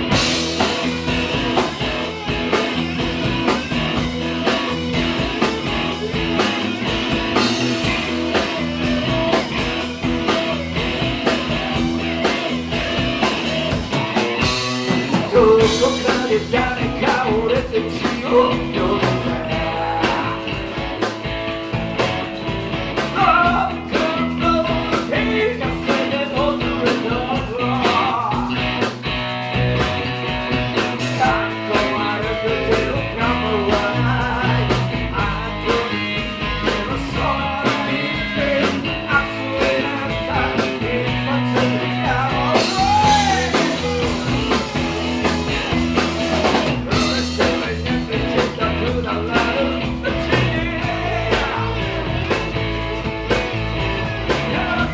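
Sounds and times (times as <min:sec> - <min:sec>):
guitar playing: 0:00.0 - 0:54.9
rock band music: 0:00.0 - 0:54.9.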